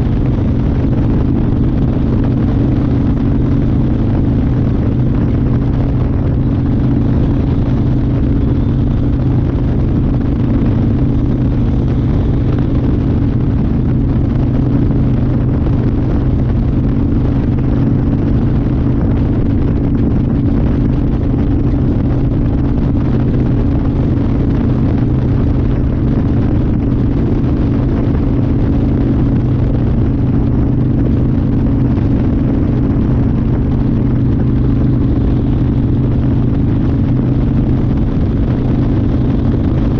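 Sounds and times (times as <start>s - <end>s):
motorcycle engine cruising: 0.0s - 39.9s
wind rushing over microphone: 0.0s - 39.9s.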